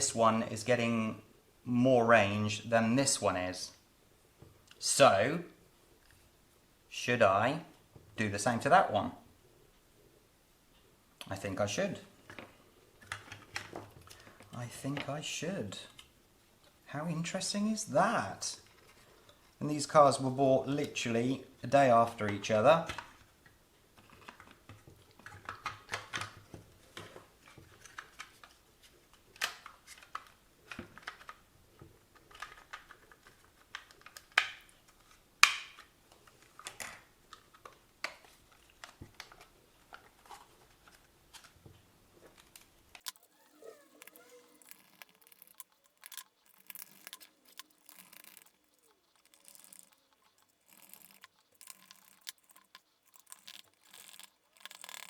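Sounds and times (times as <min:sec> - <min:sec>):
plastic clicks and scrapes: 0:42.3 - 0:55.0.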